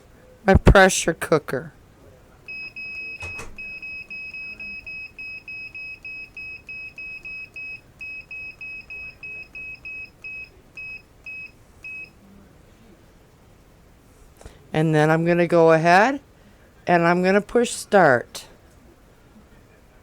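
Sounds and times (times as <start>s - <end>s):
short high beeps: 2.5s - 12.1s.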